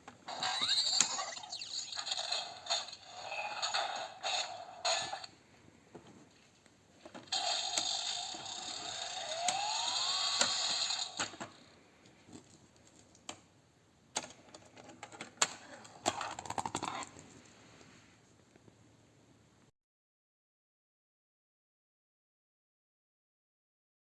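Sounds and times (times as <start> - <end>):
plastic toy clicks: 7.3 - 11.6, 14.2 - 17.1.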